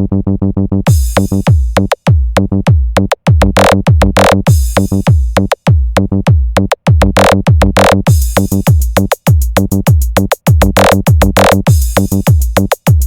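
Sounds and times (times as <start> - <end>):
booming kick drums: 0.9 - 13.0
hard dance music: 0.9 - 13.0
electronic riff: 7.1 - 12.7.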